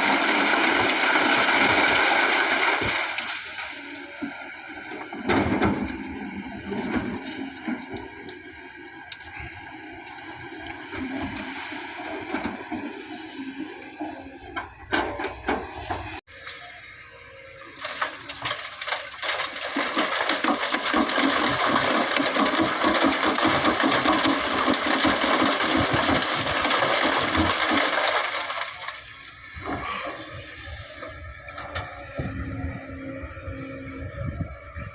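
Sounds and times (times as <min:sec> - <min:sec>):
sand and stones pouring into truck bed: 0:00.0 - 0:08.2, 0:17.6 - 0:29.2
diesel engine running: 0:00.0 - 0:34.9.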